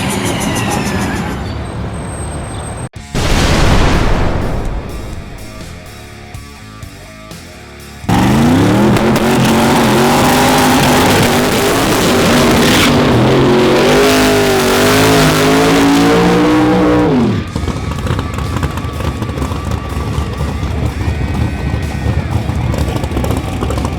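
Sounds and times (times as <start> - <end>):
drag racing cars at full throttle: 7.3 - 23.9.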